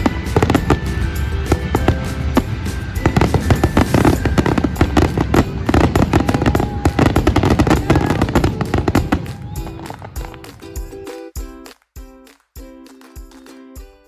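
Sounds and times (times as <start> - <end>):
fireworks bangs and crackles: 0.0 - 11.1.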